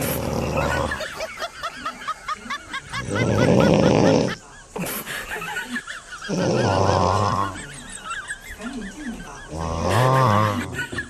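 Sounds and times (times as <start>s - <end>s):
loud rough snoring: 0.0s - 1.0s, 3.0s - 4.4s, 6.3s - 7.6s, 9.5s - 10.8s.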